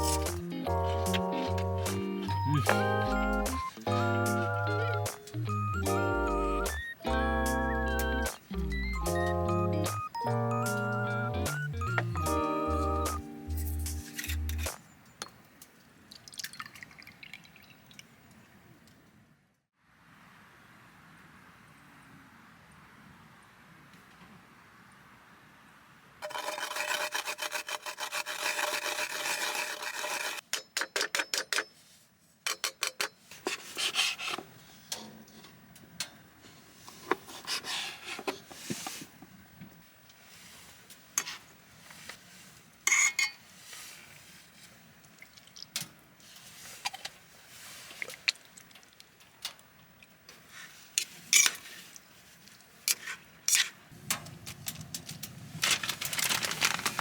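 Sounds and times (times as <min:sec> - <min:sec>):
utensils and cookware clinking: 0:14.0 - 0:14.8, 0:42.9 - 0:43.4
fast rasping scraping strokes: 0:26.2 - 0:30.4.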